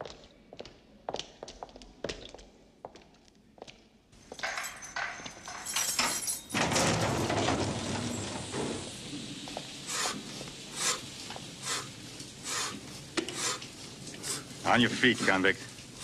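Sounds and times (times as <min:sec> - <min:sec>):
heavy door sliding open: 0:04.4 - 0:09.9.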